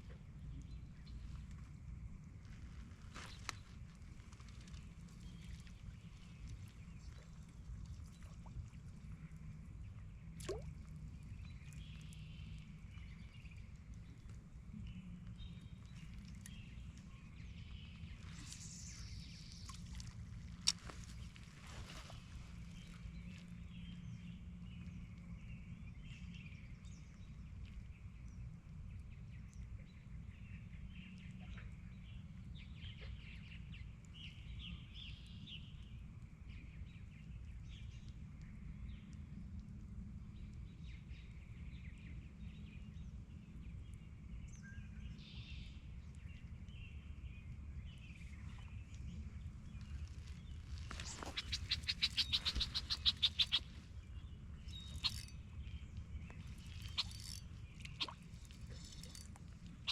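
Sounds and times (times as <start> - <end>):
small birds chirping: 40.3 - 59.9.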